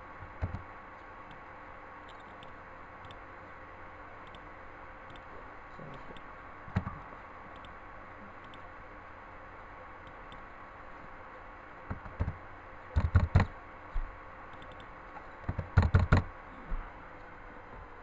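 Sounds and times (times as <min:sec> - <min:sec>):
faint steady hum: 0:00.0 - 0:18.0
sharp clicks and knocks: 0:00.2 - 0:00.7, 0:11.9 - 0:16.9.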